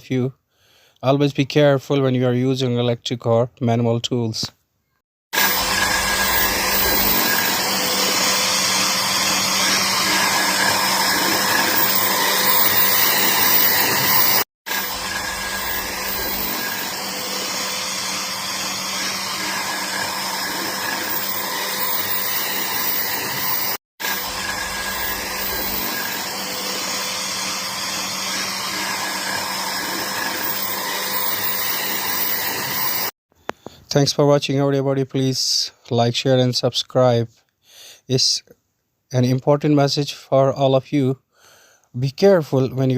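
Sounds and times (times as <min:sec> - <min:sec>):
electric power tool working wood: 0:05.4 - 0:33.2.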